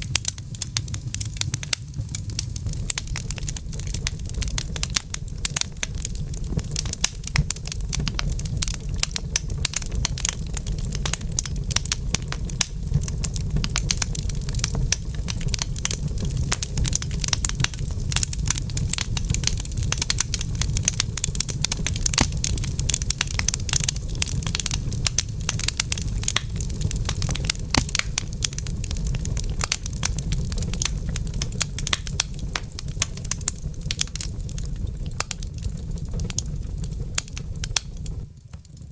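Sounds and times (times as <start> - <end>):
low fire rumble: 0.0 - 38.9
wood fire crackling: 0.0 - 38.9.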